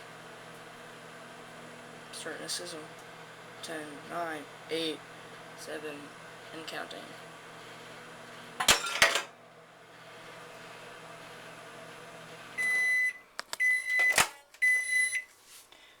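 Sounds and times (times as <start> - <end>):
microwave oven humming: 0.0 - 15.9
microwave beeps: 12.6 - 15.3.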